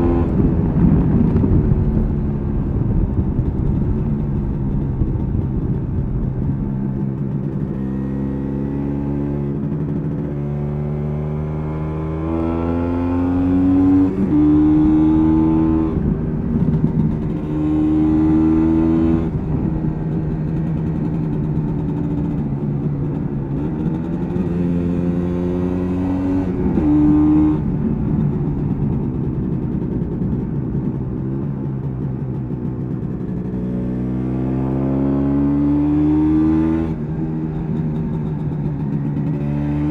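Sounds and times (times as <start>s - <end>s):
two-stroke motorcycle engine revving: 0.0s - 39.9s.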